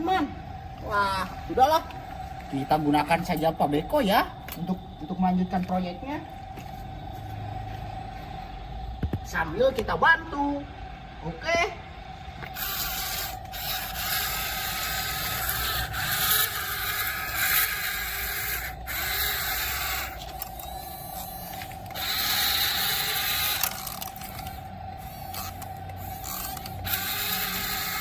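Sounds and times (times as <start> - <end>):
steady motor whine: 0.0 - 28.0
toy electric motors whirring: 12.4 - 28.0.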